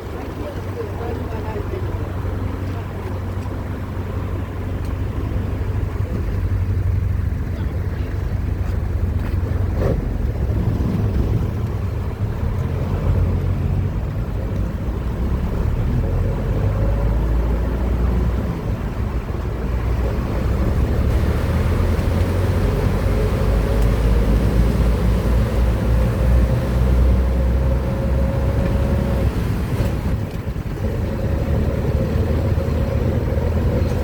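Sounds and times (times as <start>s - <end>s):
road traffic rumble: 0.0s - 34.0s
wind on microphone: 8.4s - 34.0s.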